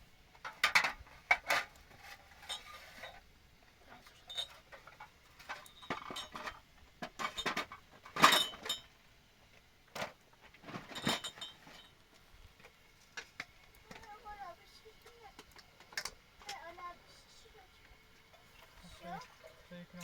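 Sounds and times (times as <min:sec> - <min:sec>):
objects knocking and clinking: 0:04.3 - 0:08.9, 0:10.7 - 0:11.9.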